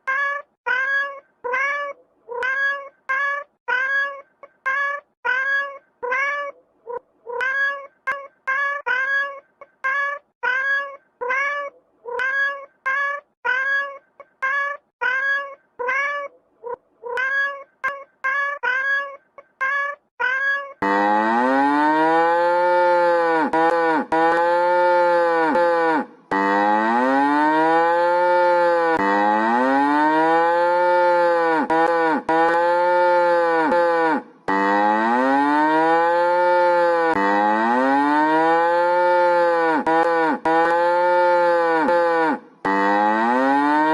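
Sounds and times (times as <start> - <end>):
cat meowing: 0.0 - 20.9, 22.6 - 26.1, 27.9 - 29.0, 30.4 - 34.7, 38.6 - 42.8
cow mooing: 20.8 - 43.9.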